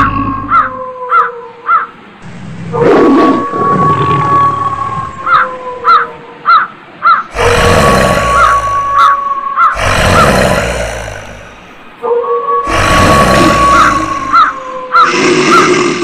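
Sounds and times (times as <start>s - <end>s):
eerie drone tone: 0.0s - 1.2s, 2.2s - 6.4s, 7.3s - 16.0s
crow cawing: 0.5s - 1.9s, 13.7s - 15.2s.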